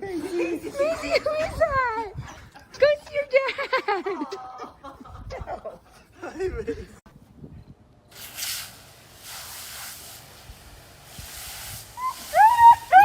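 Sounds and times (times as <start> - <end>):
soft bursts of hiss: 8.1 - 13.0.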